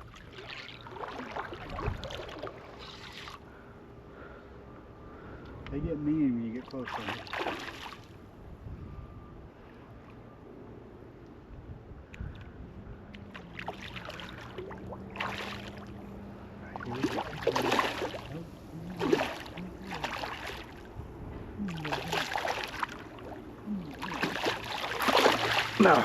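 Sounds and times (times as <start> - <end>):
steady low hum: 0.0 - 26.0
fish splashing at water surface: 6.8 - 8.1, 13.3 - 16.0, 16.8 - 20.9, 21.6 - 26.0.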